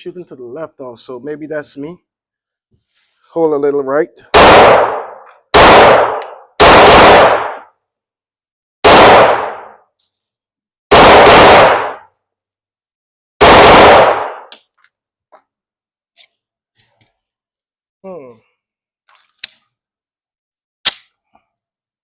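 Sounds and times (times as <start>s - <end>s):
pistol shots ringing: 4.4s - 7.6s, 8.8s - 9.8s, 10.9s - 12.1s, 13.4s - 14.5s.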